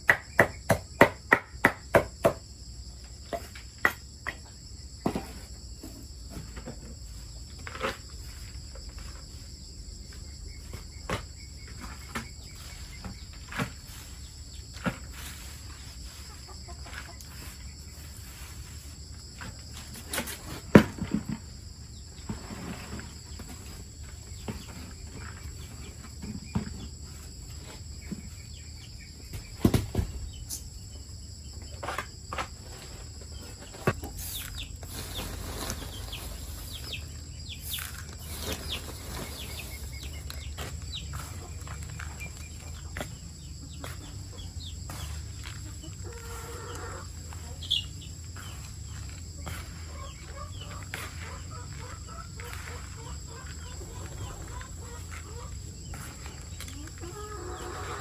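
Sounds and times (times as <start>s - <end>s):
short knocks and thuds: 29.2s - 30.4s.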